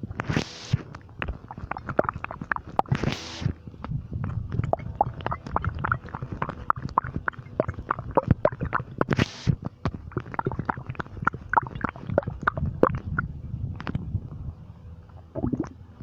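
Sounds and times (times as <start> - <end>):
stomach gurgling: 0.0 - 14.6, 15.2 - 15.8
short hiss: 3.0 - 3.5.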